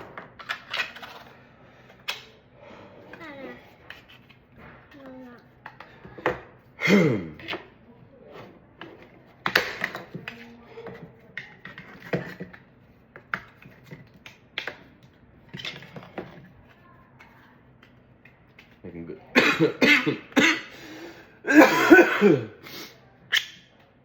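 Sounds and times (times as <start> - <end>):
plastic pieces clicking and tapping: 9.4 - 16.4.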